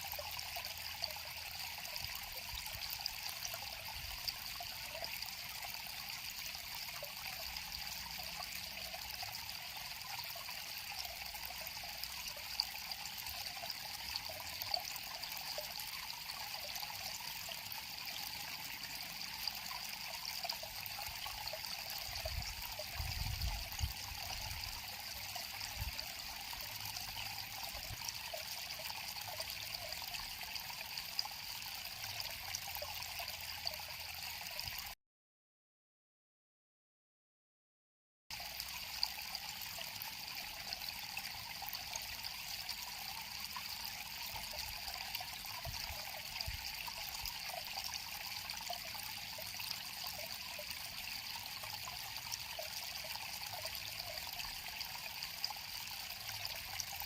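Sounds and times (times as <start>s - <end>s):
river water flowing: 0.0s - 34.9s, 38.3s - 57.0s.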